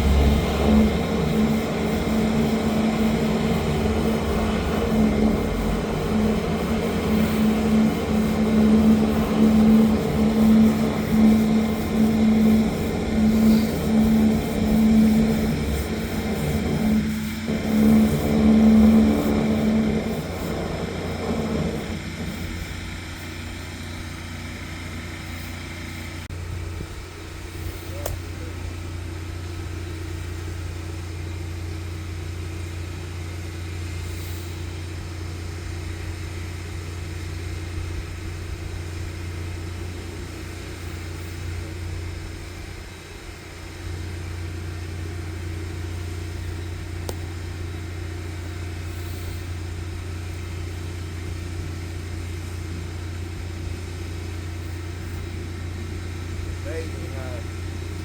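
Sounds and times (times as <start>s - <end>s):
sewer jetter engine droning: 0.0s - 58.0s.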